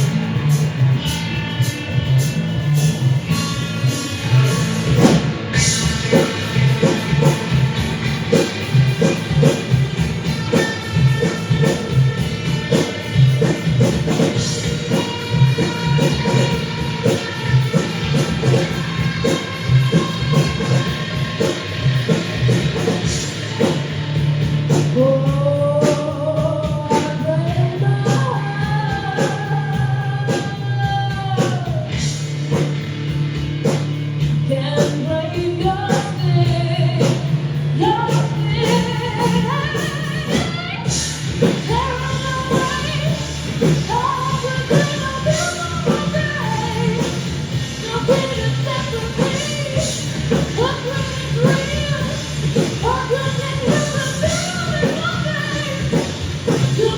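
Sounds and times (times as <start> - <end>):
bass line: 0.0 - 56.9
lead singer singing: 24.8 - 32.1, 34.5 - 56.9.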